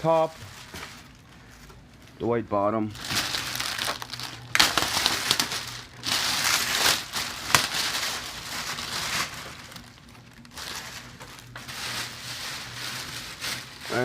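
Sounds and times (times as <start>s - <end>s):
packaging crinkling: 2.9s - 14.0s.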